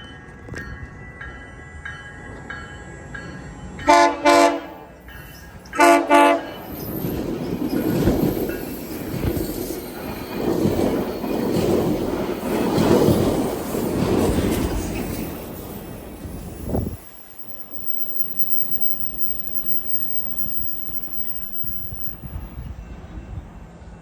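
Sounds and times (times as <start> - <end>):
train horn short blasts: 3.8 - 4.9, 5.8 - 6.6.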